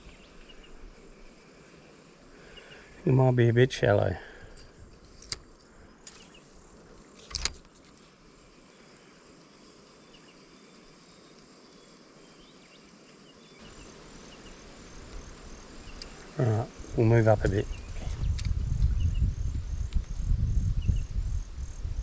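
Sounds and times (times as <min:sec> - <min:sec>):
faint insect chirping: 0:00.0 - 0:22.0
steady outdoor hiss: 0:00.0 - 0:22.0
light clicks: 0:07.1 - 0:08.0, 0:17.4 - 0:19.0.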